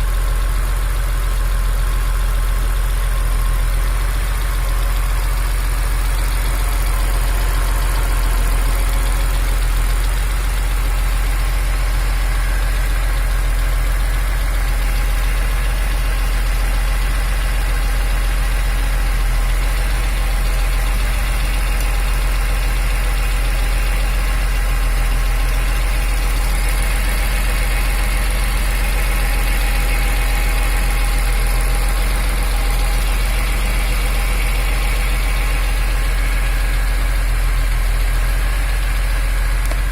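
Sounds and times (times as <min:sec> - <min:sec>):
car engine idling: 0:00.0 - 0:39.9
metallic engine tick: 0:26.2 - 0:39.9.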